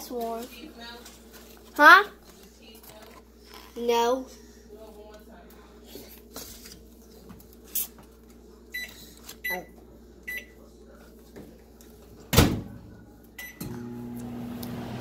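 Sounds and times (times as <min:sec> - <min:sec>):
microwave oven humming: 0:06.8 - 0:15.0.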